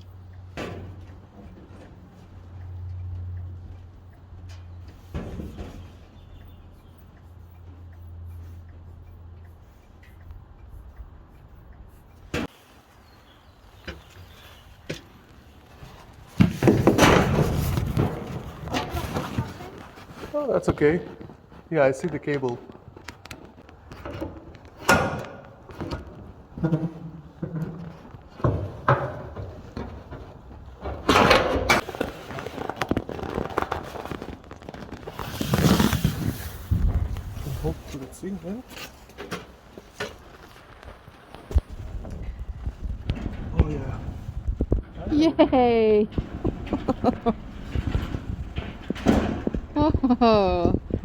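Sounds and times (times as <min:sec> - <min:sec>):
garage door rattling: 0:16.3 - 0:20.3, 0:23.9 - 0:32.1, 0:41.8 - 0:50.0.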